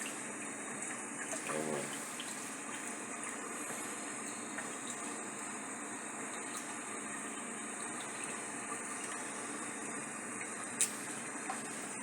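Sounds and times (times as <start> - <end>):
kitchen background hiss: 0.0 - 12.0.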